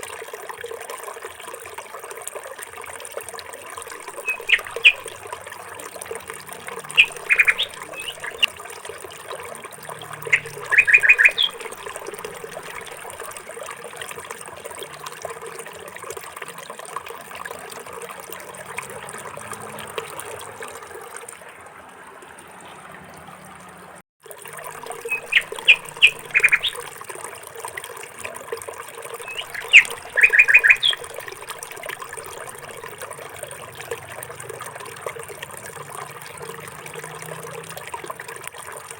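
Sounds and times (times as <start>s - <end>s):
trickle of running water: 0.0s - 38.9s
small bird chirping: 4.0s - 5.2s, 6.8s - 8.5s, 10.2s - 13.0s, 24.9s - 26.8s, 29.2s - 31.3s.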